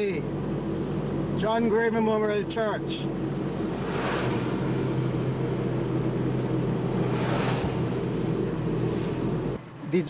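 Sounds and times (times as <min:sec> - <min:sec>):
car engine and road noise: 0:00.0 - 0:10.0
brief whooshes: 0:03.6 - 0:05.2, 0:07.0 - 0:08.1.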